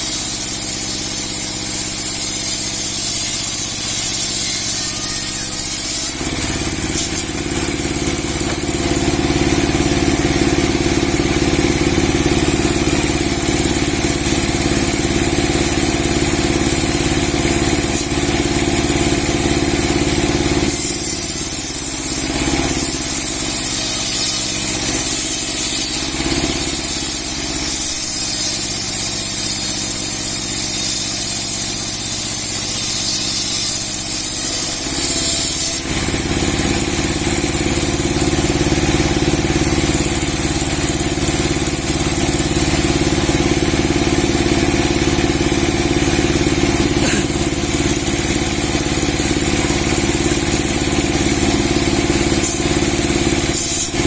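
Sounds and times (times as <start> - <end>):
saw blade cutting: 0.0 - 54.0
sawmill engine drone: 0.0 - 54.0.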